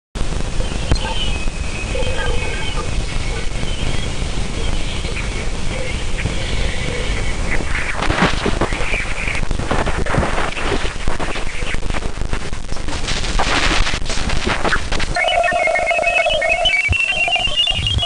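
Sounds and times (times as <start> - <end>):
hissing static with crackles: 0.2 - 18.0
high beeping tones: 15.1 - 18.0.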